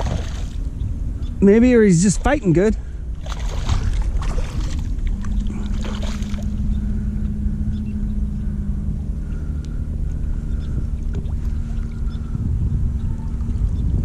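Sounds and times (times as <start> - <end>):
water splashing and sloshing: 0.0 - 0.8, 1.6 - 6.9, 10.0 - 12.4
low hum: 0.0 - 14.0
low rumble: 0.0 - 14.0.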